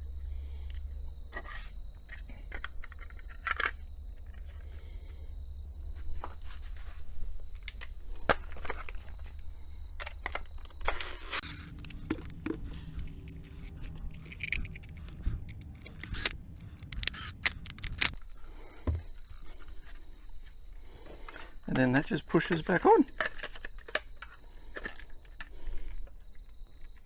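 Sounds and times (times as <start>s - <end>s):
plastic parts clicking and scraping: 11.2s - 18.2s.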